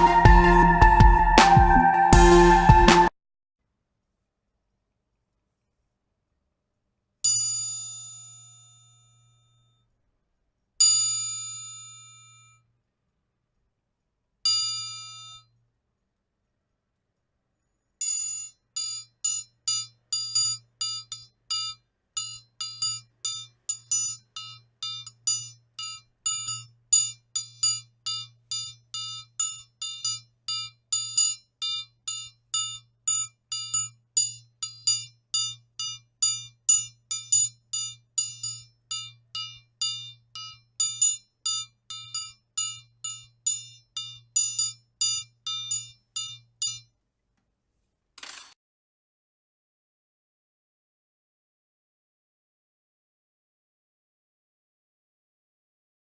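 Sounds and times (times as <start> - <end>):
metal triangle strikes: 18.1 - 46.9.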